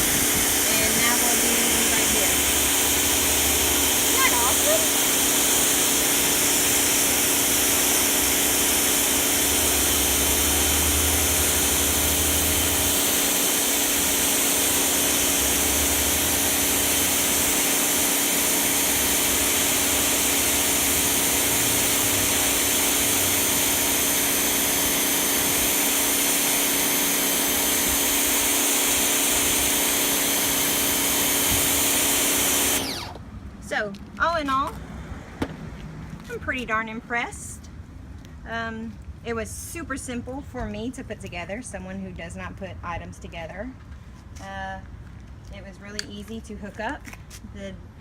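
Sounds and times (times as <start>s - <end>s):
water jet spraying concrete: 0.0s - 33.0s
pressure washer motor whining: 0.0s - 33.3s.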